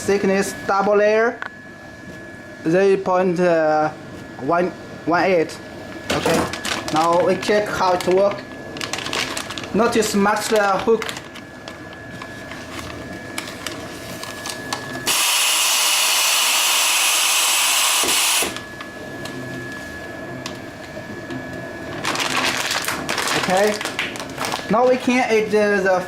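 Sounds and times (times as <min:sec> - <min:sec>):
band sealer motor hum: 0:04.2 - 0:25.7
compressed gas hissing: 0:15.1 - 0:18.5.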